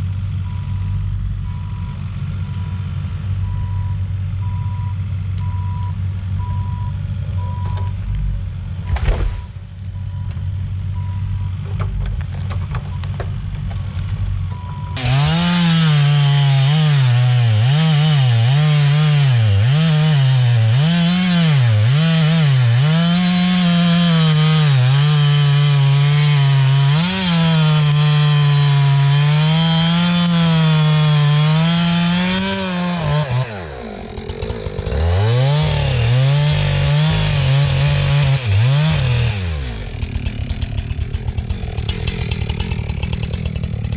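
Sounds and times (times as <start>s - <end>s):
low engine hum: 0.0s - 15.0s
chainsaw cutting wood: 8.9s - 9.8s, 15.0s - 43.9s.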